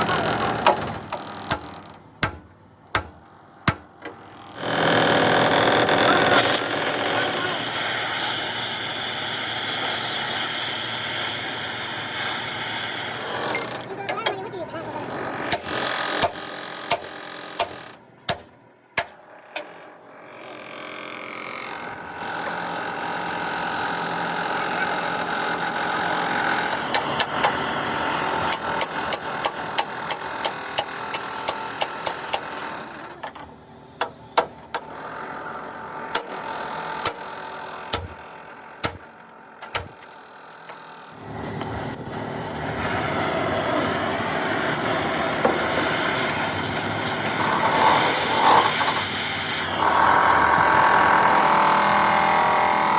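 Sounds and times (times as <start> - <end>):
steady mechanical drone: 0.0 - 52.9
sharp knocks: 0.5 - 4.2, 15.5 - 19.7, 37.9 - 40.1.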